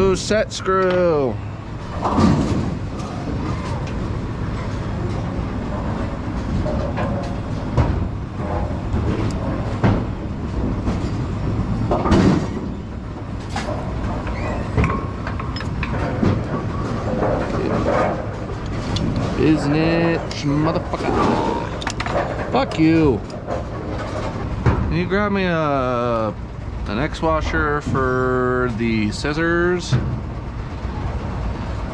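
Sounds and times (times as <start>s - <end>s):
mechanical rumble: 0.0s - 31.9s
metal clanks and knocks: 11.9s - 25.0s.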